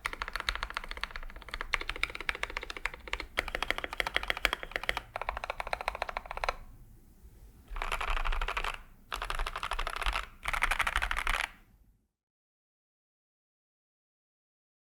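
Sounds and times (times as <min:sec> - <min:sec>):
mechanical keyboard typing: 0:00.0 - 0:06.6, 0:07.7 - 0:11.6.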